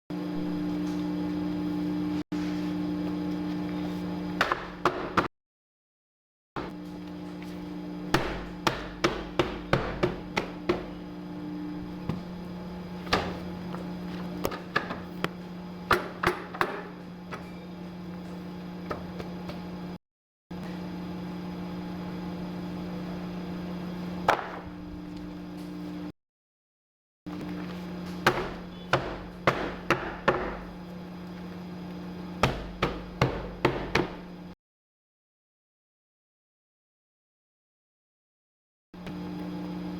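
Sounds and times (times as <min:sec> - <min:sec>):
paper cutter humming: 0:06.6 - 0:26.1, 0:27.3 - 0:34.6.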